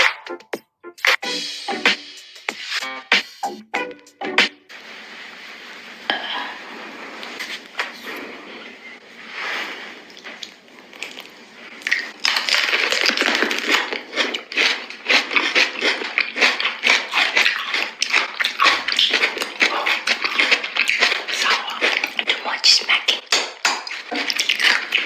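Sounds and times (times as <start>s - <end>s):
crunching fresh fruit: 10.0s - 25.0s
soft mouth sounds: 16.6s - 25.0s.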